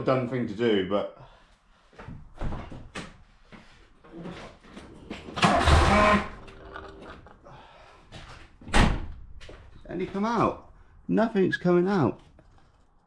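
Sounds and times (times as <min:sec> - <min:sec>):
starter motor cranking engine: 0:05.4 - 0:06.9.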